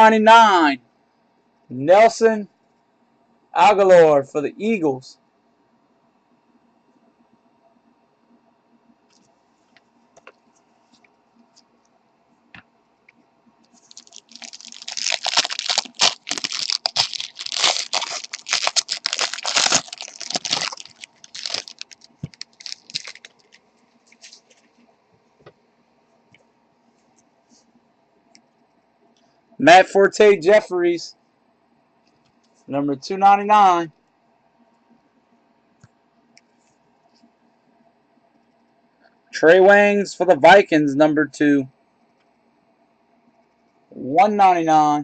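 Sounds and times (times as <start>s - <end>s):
wrapper tearing and crinkling: 13.8s - 24.5s.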